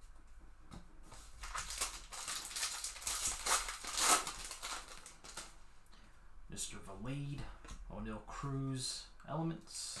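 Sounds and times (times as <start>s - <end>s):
plastic wrapper crinkling and tearing: 1.2s - 5.6s.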